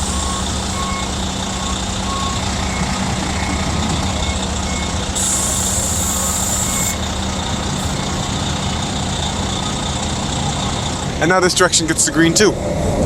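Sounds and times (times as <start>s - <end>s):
street traffic hum: 0.0s - 13.0s
hiss: 5.2s - 7.1s.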